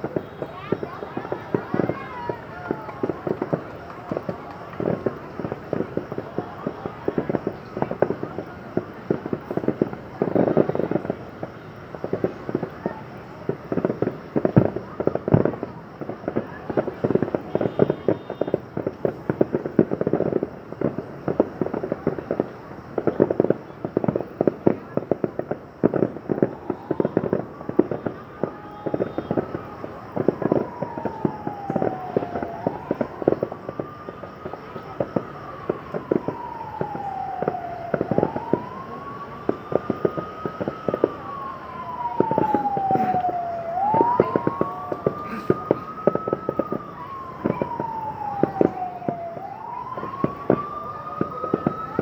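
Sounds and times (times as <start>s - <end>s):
fireworks bangs and crackles: 0.0s - 52.0s
siren wailing: 21.6s - 52.0s.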